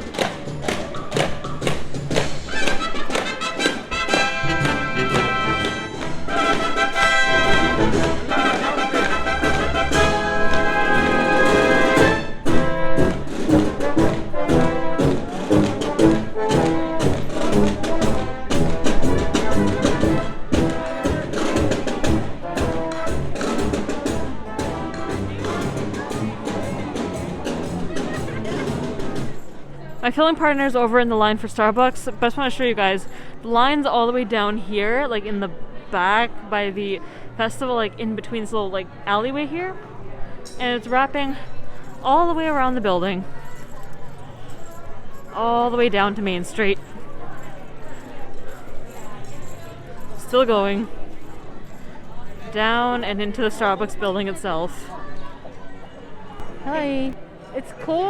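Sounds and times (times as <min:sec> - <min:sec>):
brass-led orchestral music: 0:02.4 - 0:29.4.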